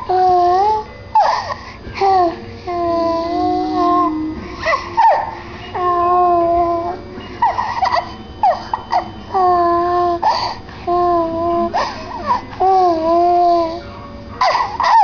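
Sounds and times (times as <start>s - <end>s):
child making held aah notes: 2.0s - 5.1s
child squeaky yelps: 5.0s - 5.4s.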